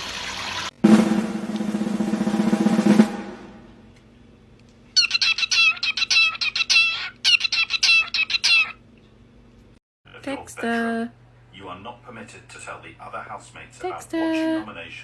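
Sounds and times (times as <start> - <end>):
snare drum roll: 0.8 - 3.8
parrot chirping calls: 4.9 - 9.0.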